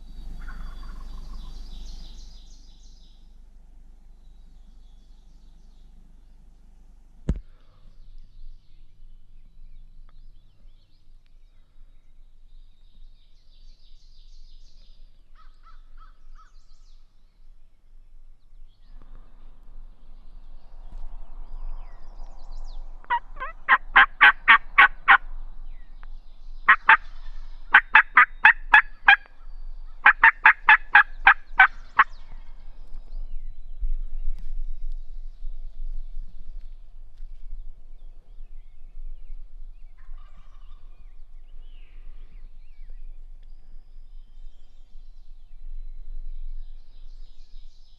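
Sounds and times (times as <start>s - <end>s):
turkey yelping: 0.4s - 1.5s, 23.1s - 25.2s, 26.7s - 29.3s, 30.0s - 32.2s.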